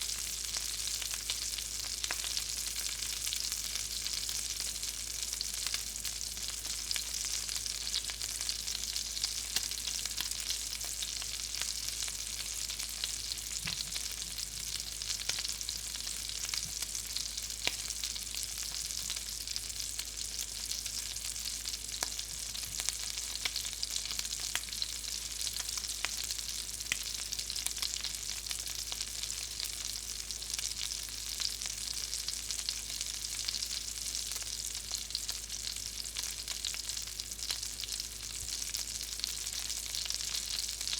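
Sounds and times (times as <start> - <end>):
hot grease sizzling: 0.0 - 40.9.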